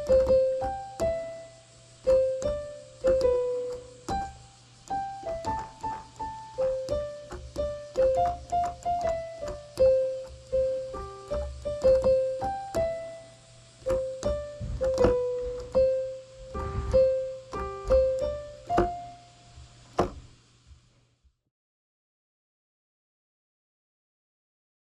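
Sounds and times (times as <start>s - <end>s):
electronic keyboard piano melody: 0.0s - 19.4s
low thuds: 13.9s - 18.2s.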